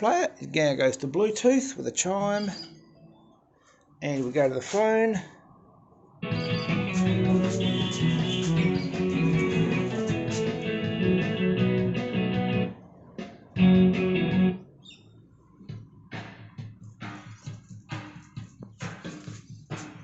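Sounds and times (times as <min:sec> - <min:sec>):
guitar music through radio speaker: 0:06.2 - 0:12.7, 0:13.6 - 0:14.6.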